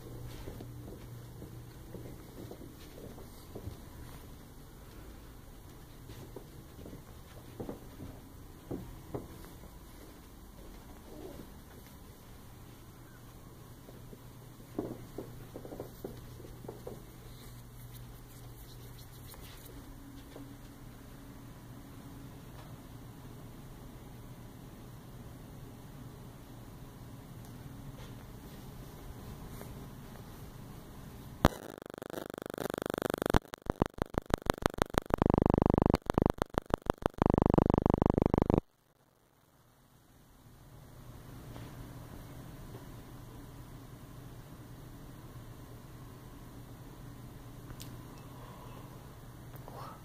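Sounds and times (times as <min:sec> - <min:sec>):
steady low hum: 0:00.0 - 0:50.0
soft irregular taps and knocks: 0:00.3 - 0:04.3, 0:05.7 - 0:10.9, 0:14.7 - 0:17.2
electronic buzzing interference: 0:31.4 - 0:39.4
sharp electronic pulses: 0:31.5 - 0:38.6.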